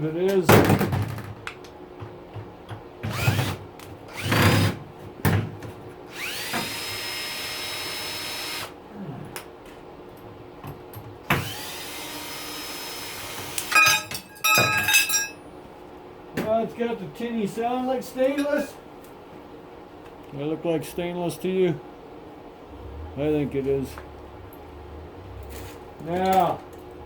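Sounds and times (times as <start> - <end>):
drill motor whining: 4.1 - 4.7, 6.1 - 8.7, 11.4 - 13.6
metal handle ringing: 13.8 - 15.4.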